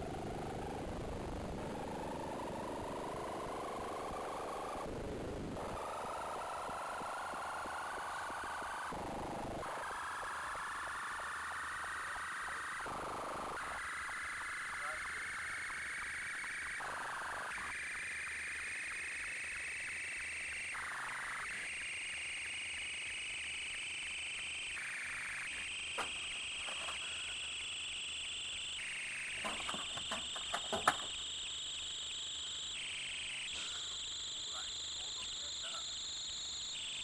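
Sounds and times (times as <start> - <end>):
high whine rising in pitch: 0.0 - 37.0.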